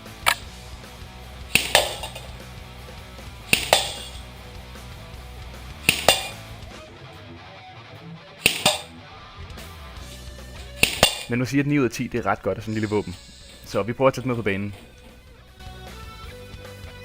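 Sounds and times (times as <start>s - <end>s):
metallic clink of bb hitting target: 0.0s - 0.5s, 1.5s - 2.4s, 3.5s - 4.3s, 5.8s - 6.5s, 8.4s - 8.9s, 10.6s - 11.4s
airsoft gun shots: 1.5s - 2.3s, 3.5s - 4.2s, 5.8s - 6.4s, 8.4s - 8.9s, 10.7s - 11.3s.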